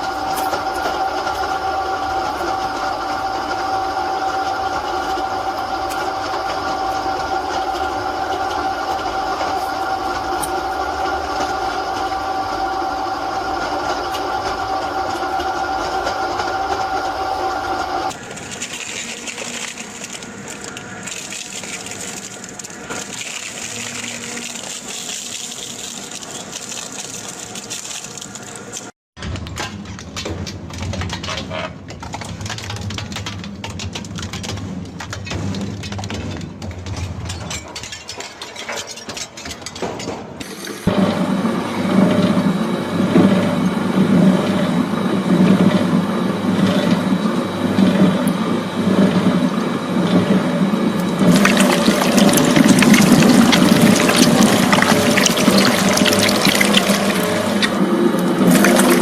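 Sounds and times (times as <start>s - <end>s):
steady machine hum: 40.9s - 59.0s.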